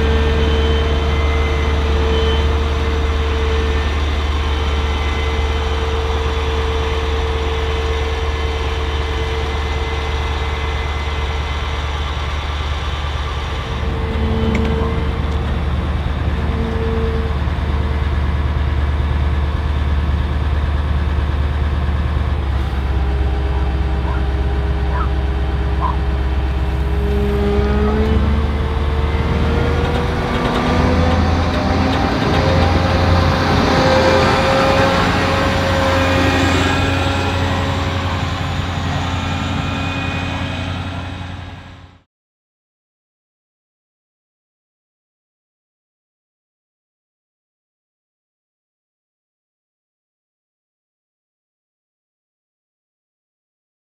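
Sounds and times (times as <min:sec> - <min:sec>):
farm machinery engines running: 0:00.0 - 0:42.0.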